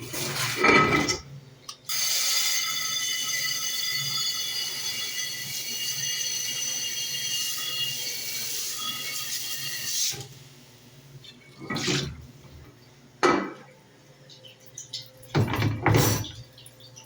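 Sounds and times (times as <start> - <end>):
dishes and metal racks clattering: 0.0 - 1.3, 11.3 - 13.8, 14.4 - 16.6
dishwasher water spraying: 15.3 - 16.5.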